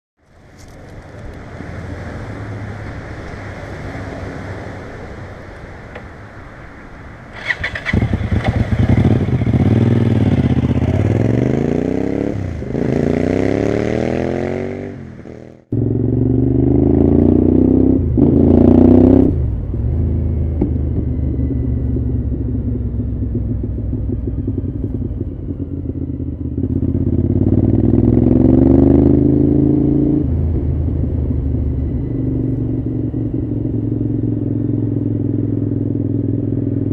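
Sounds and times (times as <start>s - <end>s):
motorcycle engine accelerating: 7.3s - 36.9s.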